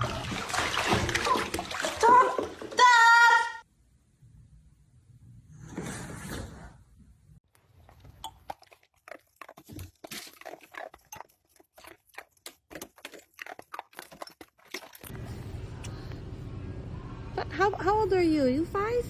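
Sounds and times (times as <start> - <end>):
dog chewing crunchy food: 7.6 - 15.1.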